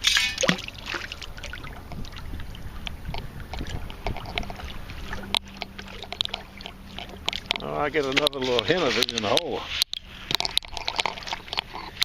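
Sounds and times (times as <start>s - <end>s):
wind noise on microphone: 1.1s - 7.7s.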